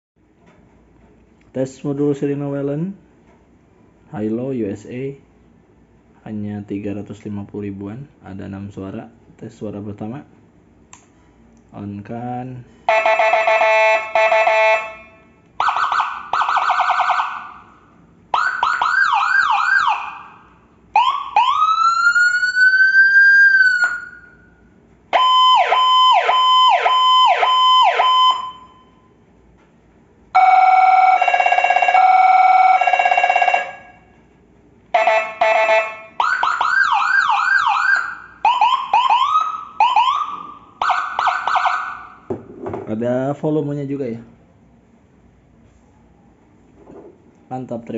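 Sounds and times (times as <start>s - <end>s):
siren cycling through tones: 12.9s - 17.7s, 18.3s - 20.4s, 21.0s - 24.5s, 25.1s - 29.2s, 30.4s - 34.0s, 35.0s - 42.2s.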